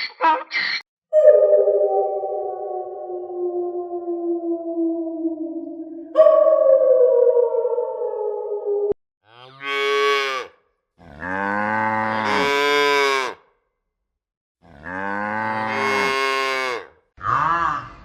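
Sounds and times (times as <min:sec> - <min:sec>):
falling electronic tone: 0:01.2 - 0:09.0
cow mooing: 0:09.3 - 0:13.4, 0:14.6 - 0:18.0.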